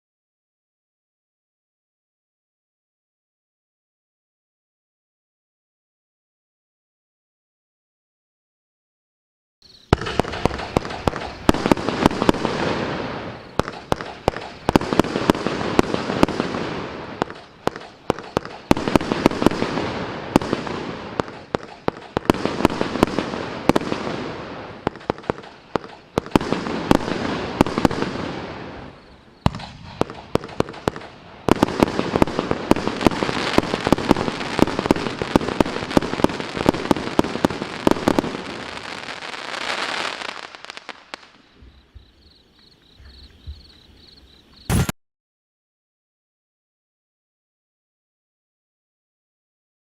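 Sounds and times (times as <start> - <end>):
firework barrage bangs and crackling: 9.9 - 42.1, 44.7 - 45.0.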